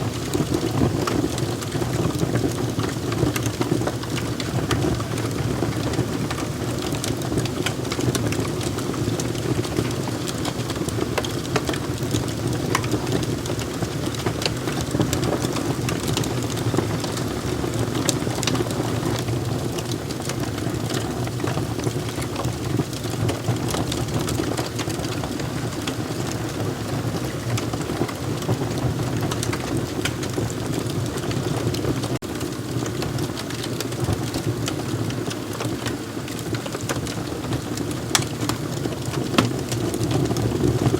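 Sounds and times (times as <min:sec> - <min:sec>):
wood fire crackling and popping: 0:00.0 - 0:40.9.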